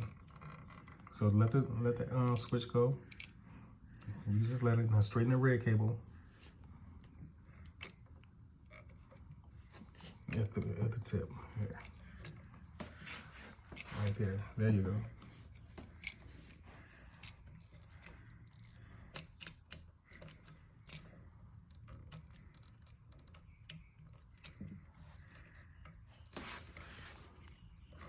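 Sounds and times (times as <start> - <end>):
small clicks and rubbing: 0.0 - 4.2, 6.2 - 28.0.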